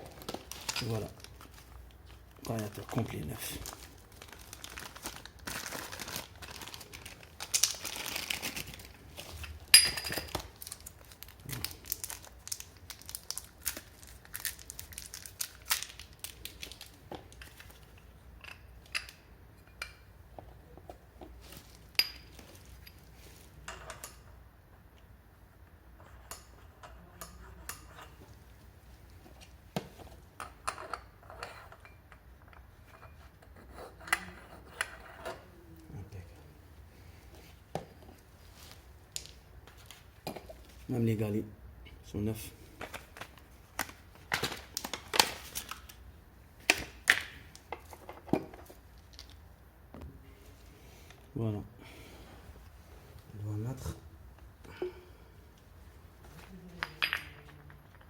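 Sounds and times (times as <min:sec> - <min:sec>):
plastic packaging crinkling: 0:00.0 - 0:09.6, 0:10.2 - 0:17.8, 0:42.9 - 0:46.0.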